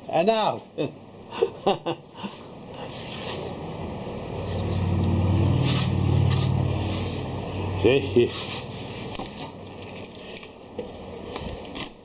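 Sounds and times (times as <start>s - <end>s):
low engine hum: 3.6s - 9.2s.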